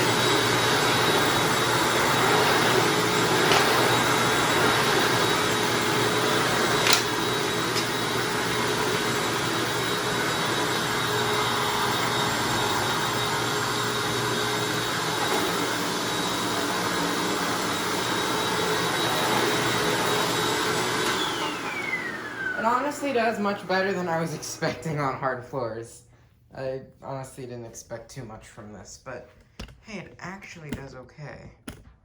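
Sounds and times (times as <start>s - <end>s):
upright vacuum cleaner running: 0.0s - 25.6s.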